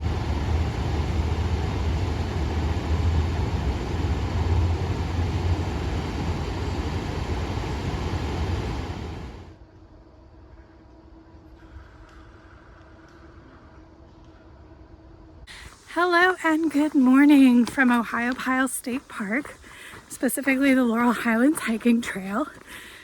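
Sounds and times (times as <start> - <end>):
loud low rumbling: 0.0 - 9.6.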